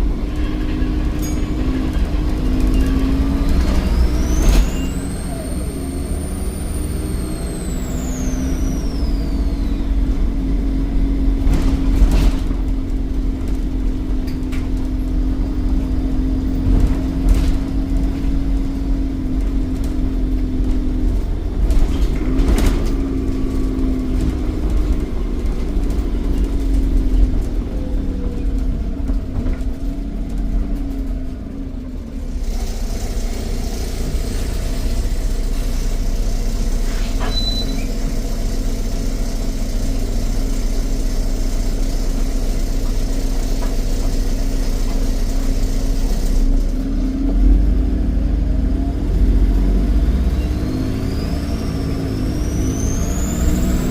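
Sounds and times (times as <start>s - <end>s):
bus engine drone: 0.0s - 53.9s
turbo whistle: 37.2s - 37.9s.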